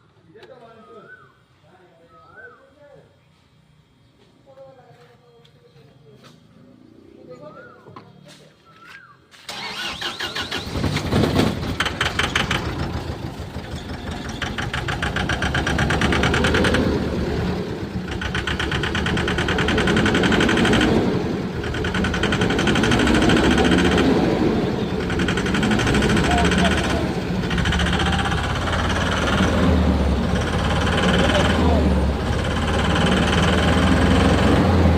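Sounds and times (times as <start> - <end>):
diesel truck engine running: 9.5 - 34.9
fast metallic engine knock: 11.1 - 24.2, 25.0 - 29.6, 30.2 - 34.4.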